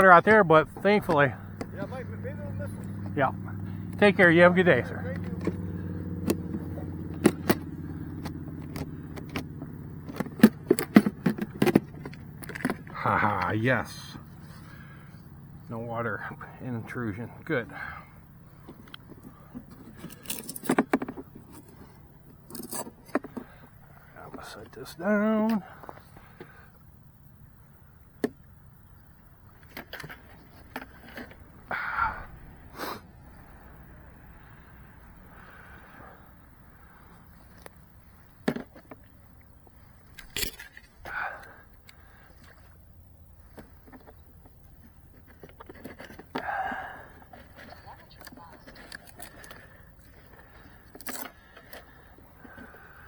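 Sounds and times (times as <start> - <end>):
low engine hum: 0.0 - 53.0
handling knocks and clicks: 5.1 - 13.6, 18.6 - 24.8, 29.4 - 31.6, 37.4 - 42.8, 43.4 - 53.0
sharp clicks and knocks: 6.2 - 13.0
scraping rustle: 29.5 - 31.6.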